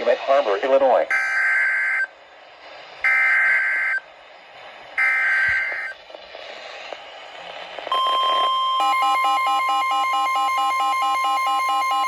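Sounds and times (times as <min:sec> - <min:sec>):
faint radio hiss: 0:00.0 - 0:08.8
digital data tone bursts: 0:01.1 - 0:02.1, 0:03.0 - 0:04.0, 0:05.0 - 0:06.0.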